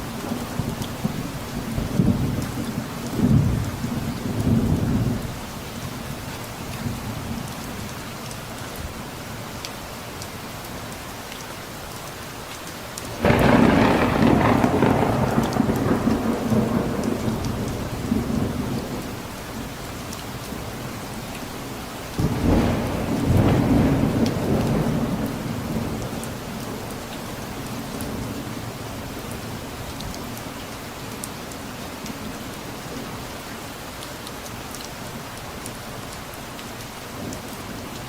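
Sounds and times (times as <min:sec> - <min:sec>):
steady rain: 0:00.0 - 0:38.0
thunder claps rumbling: 0:13.2 - 0:19.1, 0:22.2 - 0:26.3.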